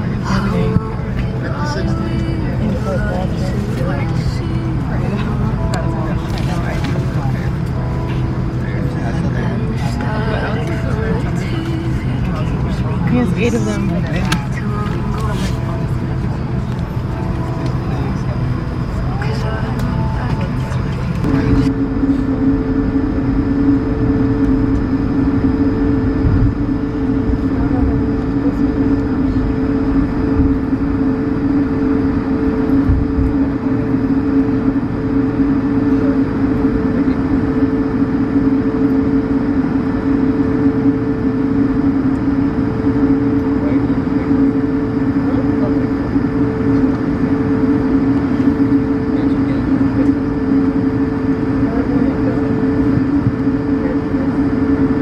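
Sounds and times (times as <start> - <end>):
airliner engines droning in cabin: 0.0 - 55.0.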